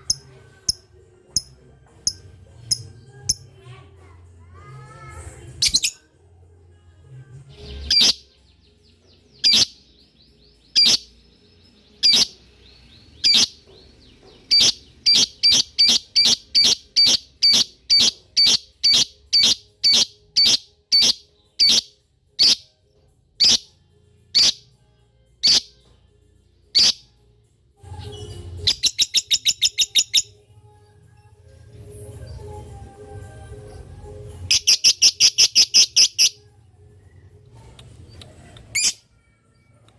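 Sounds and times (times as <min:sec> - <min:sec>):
bird giving shrill chirps: 0:12.0 - 0:12.3, 0:14.5 - 0:21.8, 0:23.4 - 0:23.6, 0:34.5 - 0:36.4.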